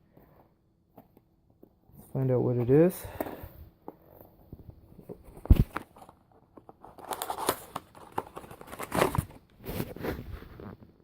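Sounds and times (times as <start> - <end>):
plastic packaging crinkling: 5.3 - 10.1.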